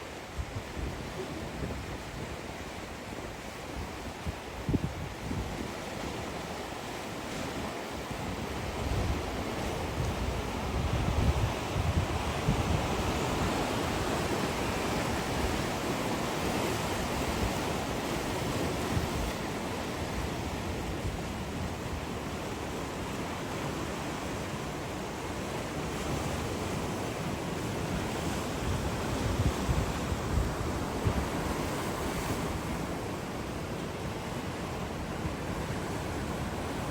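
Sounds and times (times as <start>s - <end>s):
sea waves breaking on shore: 0.0s - 36.9s
wind buffeting microphone: 3.7s - 5.8s, 8.1s - 19.5s, 27.3s - 33.2s.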